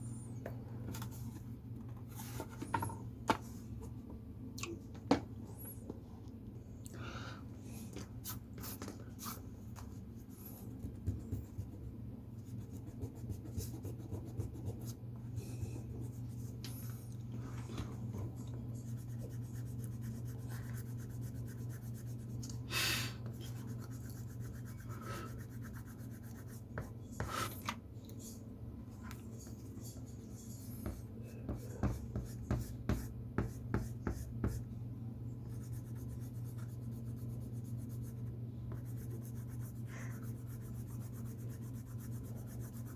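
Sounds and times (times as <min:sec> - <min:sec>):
steady low hum: 0:00.0 - 0:42.9
pencil scratching on paper: 0:10.2 - 0:16.6, 0:18.8 - 0:22.3, 0:23.5 - 0:27.5, 0:35.5 - 0:42.9.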